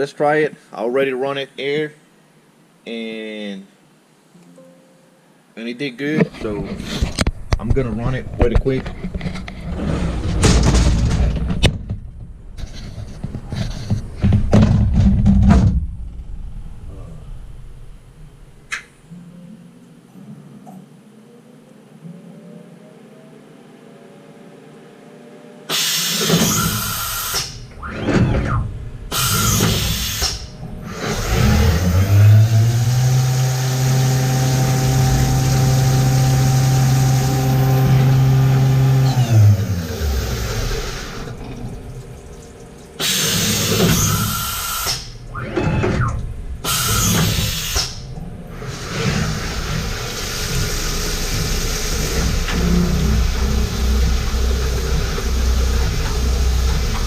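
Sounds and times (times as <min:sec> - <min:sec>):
steady low hum: 0:00.0 - 0:57.0
milling machine running: 0:25.7 - 0:57.0.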